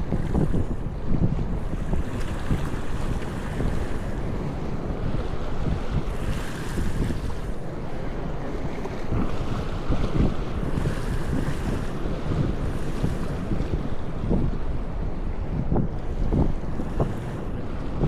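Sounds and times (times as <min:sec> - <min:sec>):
ocean surf: 0:00.0 - 0:18.0
wind buffeting microphone: 0:00.0 - 0:18.0.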